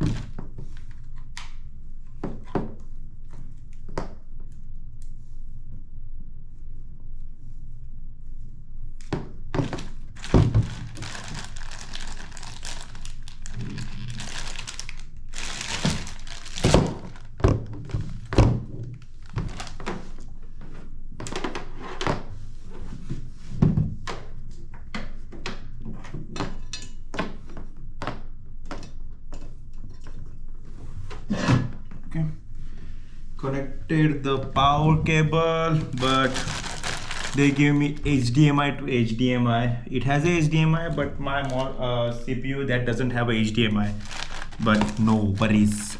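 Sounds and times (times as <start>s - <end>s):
rustling: 9.6s - 17.4s, 35.8s - 38.2s, 43.9s - 45.9s.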